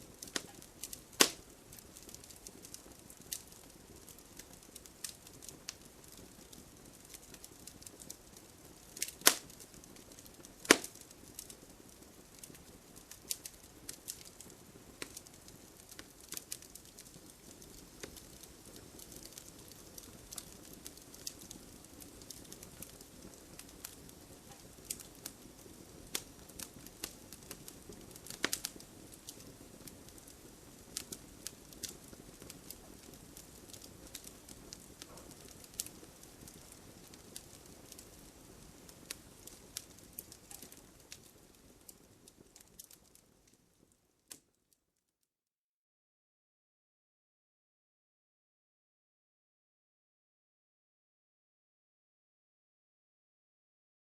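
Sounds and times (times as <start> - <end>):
wood fire crackling: 0.0 - 44.7
low rush of flame: 0.1 - 43.2.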